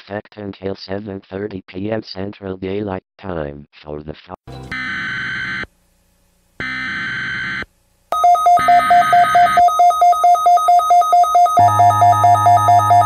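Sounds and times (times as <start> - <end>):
pulsing two-tone alert signal: 8.2 - 13.0.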